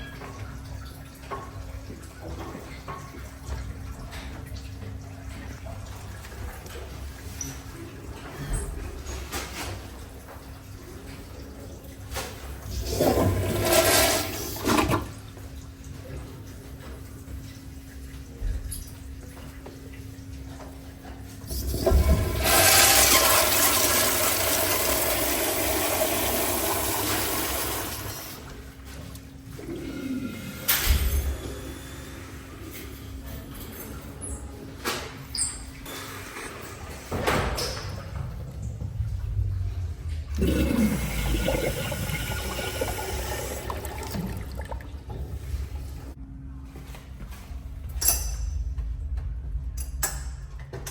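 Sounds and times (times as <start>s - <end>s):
rush of flushing water: 0.0s - 18.6s, 20.5s - 33.2s, 35.8s - 46.2s
toilet flush thump: 12.1s - 15.2s, 21.5s - 28.4s, 30.3s - 31.6s, 40.3s - 45.6s.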